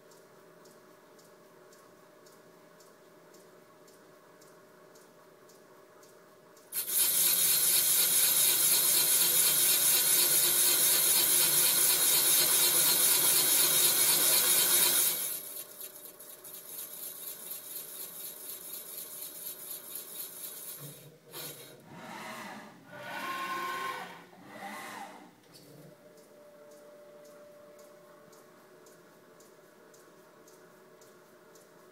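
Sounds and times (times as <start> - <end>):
pulsing machining noise: 6.8 - 25.3
machine whirring: 6.8 - 26.3.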